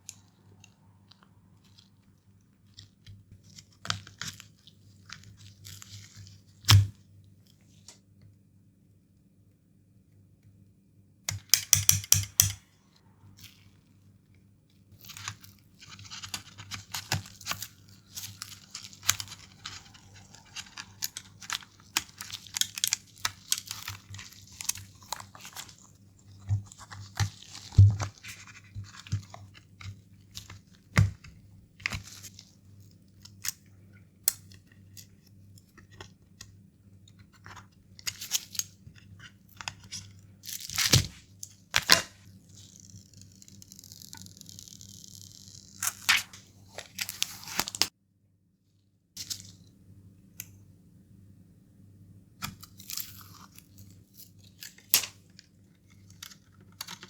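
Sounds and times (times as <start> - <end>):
clicks and taps on plastic parts: 11.3 - 12.6.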